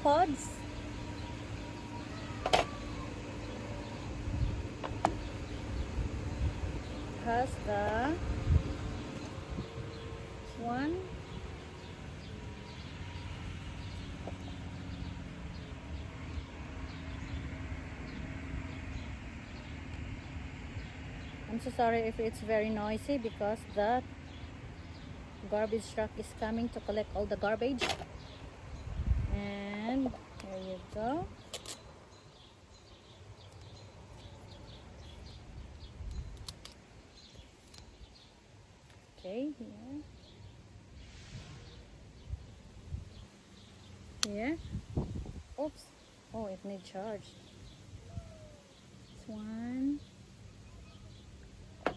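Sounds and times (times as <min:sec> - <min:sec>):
garbage truck engine running: 0:00.0 - 0:21.7
birds chirping: 0:00.0 - 0:51.9.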